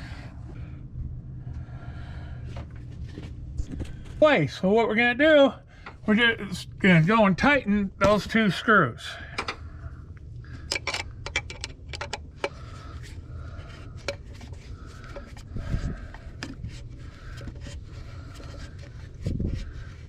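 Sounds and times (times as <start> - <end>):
screwdriver clicking and scraping: 10.7 - 12.6.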